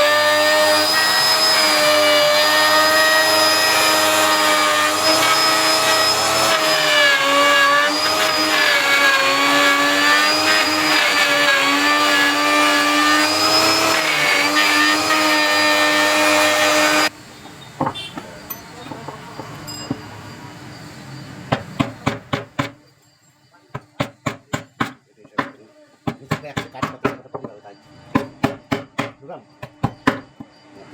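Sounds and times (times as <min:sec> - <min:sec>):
power tool motor whining: 0:00.0 - 0:17.1.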